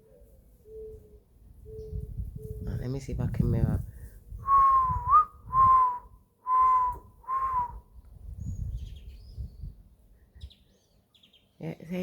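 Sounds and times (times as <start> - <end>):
person whistling dove coos: 4.4 - 7.8
faint bird chirps: 8.4 - 11.9.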